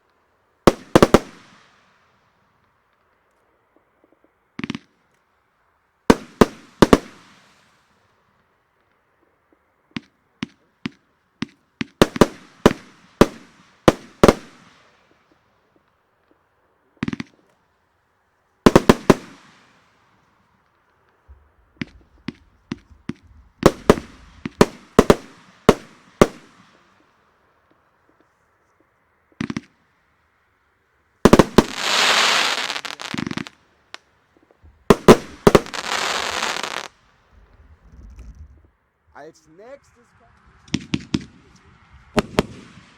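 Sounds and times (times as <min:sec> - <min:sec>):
firework bangs: 0:00.7 - 0:01.7, 0:06.1 - 0:07.7, 0:09.9 - 0:15.8, 0:18.6 - 0:28.2, 0:31.2 - 0:38.7, 0:39.6 - 0:42.9
firework crackling: 0:00.7 - 0:02.0, 0:06.1 - 0:08.1, 0:10.0 - 0:16.4, 0:18.6 - 0:27.9, 0:31.2 - 0:38.4, 0:39.3 - 0:42.9.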